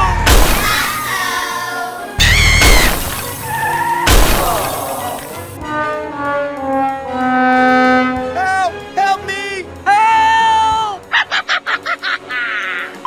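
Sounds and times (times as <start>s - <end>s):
crash and shatter: 0.2s - 5.6s.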